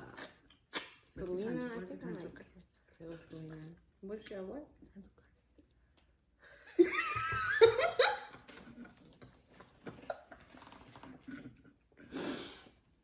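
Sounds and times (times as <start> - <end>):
breathy puff: 12.0 - 12.8.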